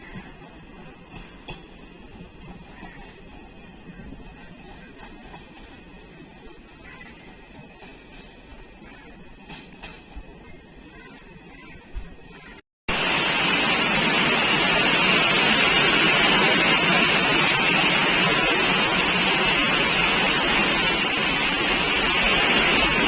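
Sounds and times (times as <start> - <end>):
heavy rain hissing: 12.9 - 23.0.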